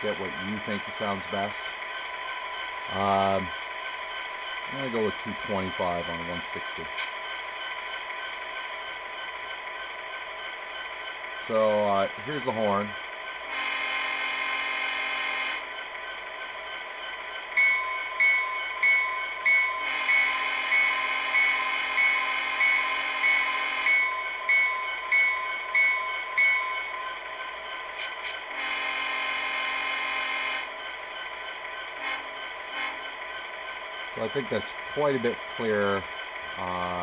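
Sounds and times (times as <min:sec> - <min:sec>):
model diesel horn blasts: 0:13.5 - 0:14.4, 0:28.6 - 0:30.4
bell ringing: 0:17.0 - 0:28.1.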